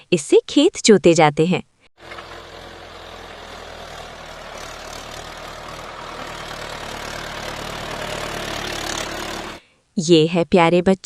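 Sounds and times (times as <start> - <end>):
tractor engine idling: 2.0 - 9.6.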